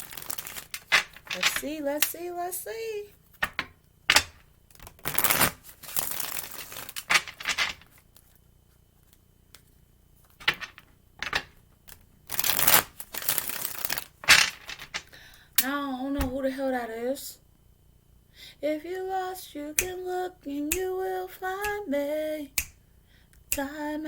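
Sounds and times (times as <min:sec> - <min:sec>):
cards being shuffled: 0:00.0 - 0:02.1, 0:04.7 - 0:08.4, 0:09.0 - 0:15.0.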